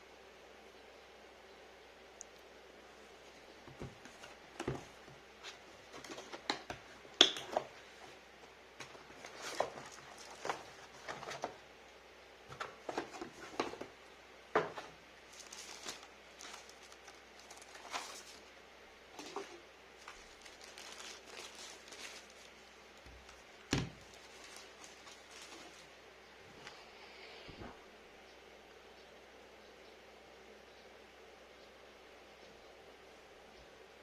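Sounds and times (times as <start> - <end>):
hands handling packaging: 3.5 - 11.7, 12.5 - 26.0.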